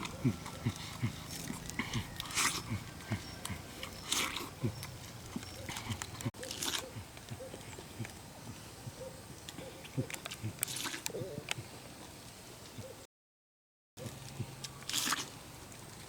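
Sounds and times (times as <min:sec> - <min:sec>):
animal grunting: 0:00.0 - 0:08.2.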